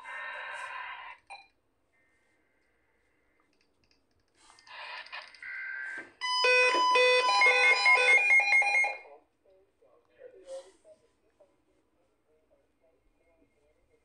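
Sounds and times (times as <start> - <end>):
emergency alert beeping tones: 5.9 - 9.1.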